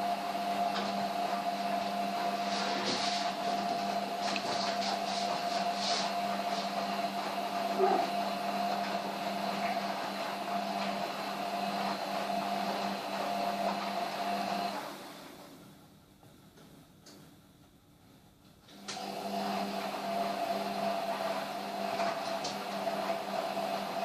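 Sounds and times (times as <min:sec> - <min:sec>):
electric machine whirring: 0:00.7 - 0:15.2.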